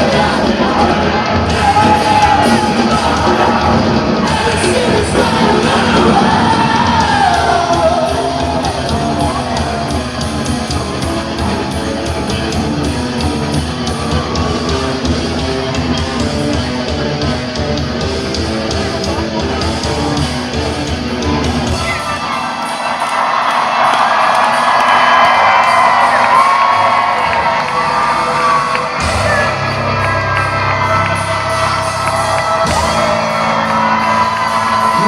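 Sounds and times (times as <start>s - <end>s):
shouted sung lead vocal: 0.0s - 10.2s
rock band playing live: 0.0s - 35.0s.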